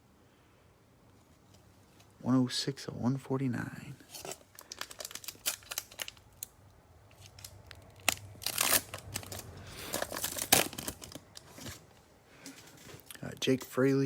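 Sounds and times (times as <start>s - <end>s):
cards rustling against plastic: 4.1s - 13.8s.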